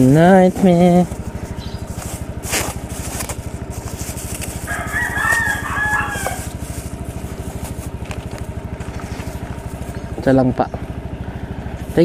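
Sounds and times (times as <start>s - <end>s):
motorcycle engine idling: 0.0s - 12.0s
rooster crowing: 4.5s - 6.8s.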